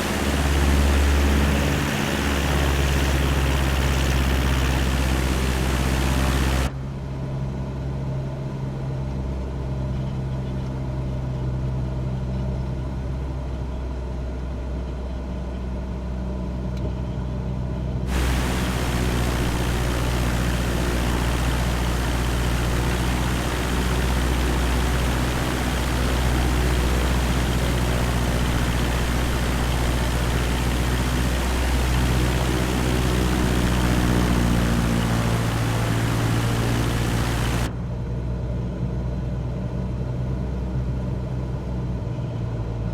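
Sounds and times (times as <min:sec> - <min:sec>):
aircraft engine and propeller droning: 0:00.0 - 0:06.7, 0:18.1 - 0:37.7
hiss: 0:00.0 - 0:06.7, 0:18.1 - 0:37.7.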